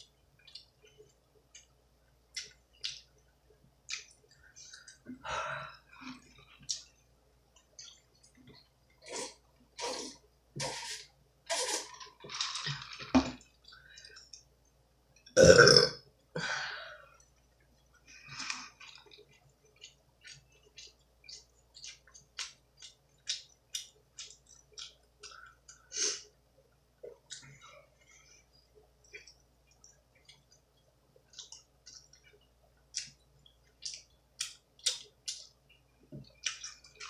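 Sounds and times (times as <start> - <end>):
loud burp: 15.4 - 16.0
wet mouth eating noises: 18.4 - 26.3, 29.1 - 37.0.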